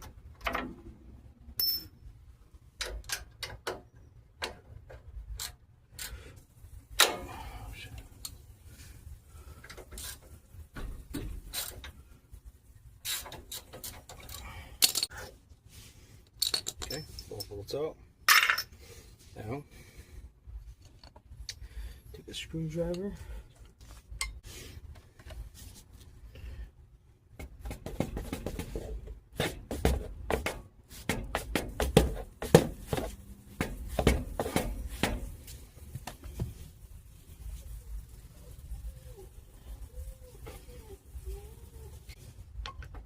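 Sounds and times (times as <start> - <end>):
metal brake parts clicking and scraping: 16.2 - 17.6.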